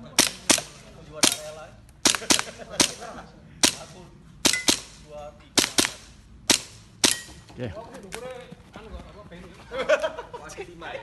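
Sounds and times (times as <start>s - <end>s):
airsoft gun shots: 0.2s - 7.4s.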